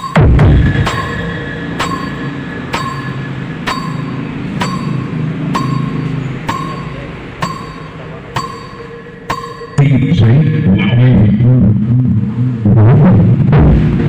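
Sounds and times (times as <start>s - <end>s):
bright ringing hit: 0.0s - 10.6s
low steady bass tone: 0.0s - 14.0s.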